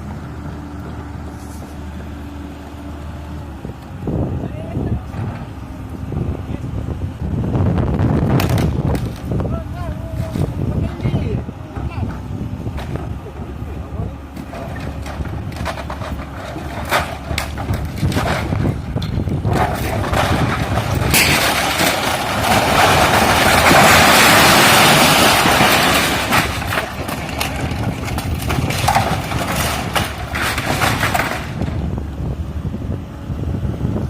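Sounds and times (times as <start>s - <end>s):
excavator diesel engine under load: 0.0s - 34.0s
debris crashing and rattling: 8.2s - 11.3s, 14.3s - 31.9s
structure cracking and knocking: 8.3s - 10.6s, 14.3s - 31.8s.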